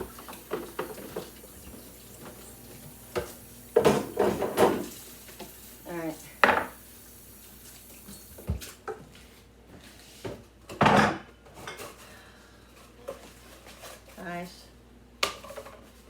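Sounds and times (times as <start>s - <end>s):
dishes clattering: 0.0s - 5.1s, 6.4s - 6.8s.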